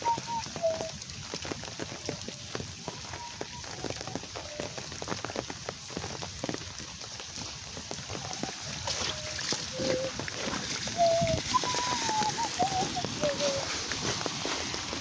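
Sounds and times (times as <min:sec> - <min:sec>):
heavy rain pouring: 0:00.0 - 0:15.0.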